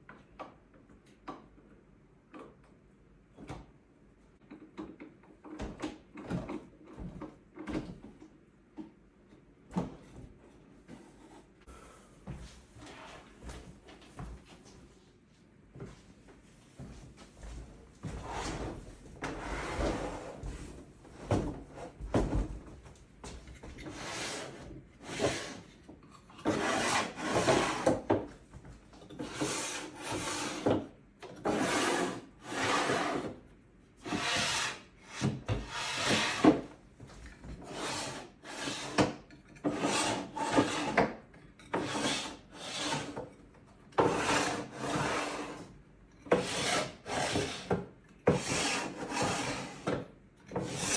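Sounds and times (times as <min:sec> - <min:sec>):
parts rubbing and scraping: 0:50.6 - 0:50.9.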